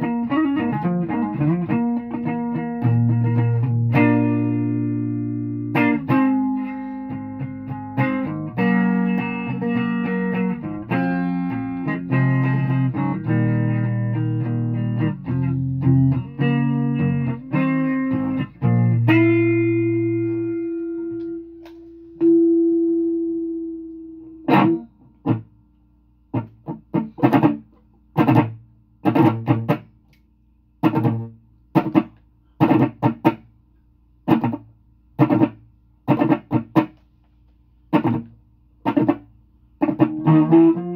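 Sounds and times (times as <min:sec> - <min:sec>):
choppy guitar strums: 0:00.0 - 0:25.5, 0:26.3 - 0:30.0, 0:30.8 - 0:33.5, 0:34.2 - 0:37.1, 0:37.9 - 0:40.9
guitar chords: 0:00.0 - 0:25.6, 0:26.3 - 0:30.0, 0:30.8 - 0:33.5, 0:34.2 - 0:37.0, 0:37.9 - 0:40.9
guitar held note ringing: 0:18.9 - 0:25.0.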